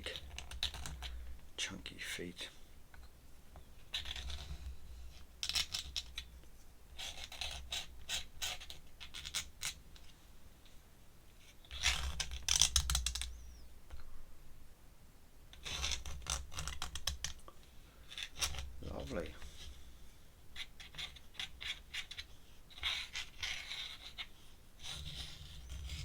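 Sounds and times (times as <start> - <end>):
pen scratching on paper: 20.6 - 26.0.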